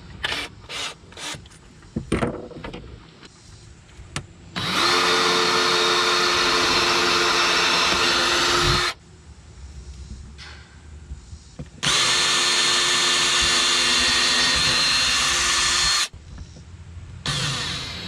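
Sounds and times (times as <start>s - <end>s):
power drill running: 4.6s - 9.0s, 11.8s - 16.1s, 17.2s - 18.0s.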